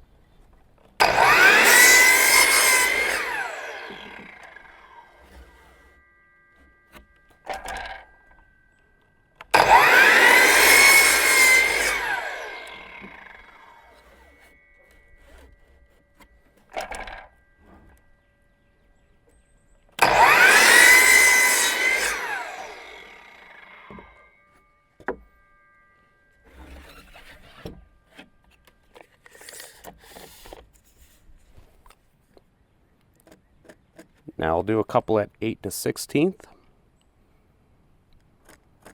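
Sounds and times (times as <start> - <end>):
electric saw cutting wood siding: 1.0 - 30.7.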